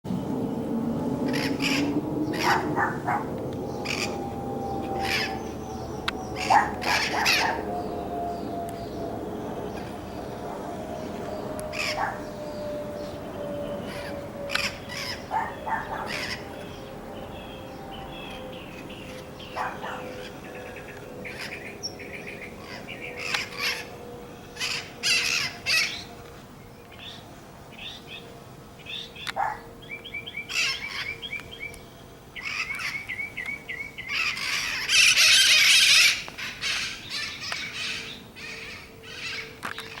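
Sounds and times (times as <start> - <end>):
parrots calling: 1.3 - 4.2, 4.9 - 5.6, 6.2 - 8.0, 11.7 - 12.4, 13.8 - 17.6, 18.2 - 24.0, 24.6 - 26.1, 28.9 - 31.7, 32.4 - 40.0.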